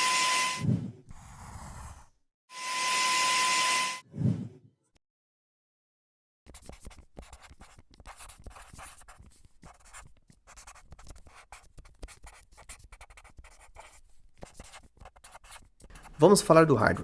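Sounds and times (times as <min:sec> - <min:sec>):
scratching and tapping of writing: 0:01.1 - 0:02.1, 0:06.5 - 0:16.2.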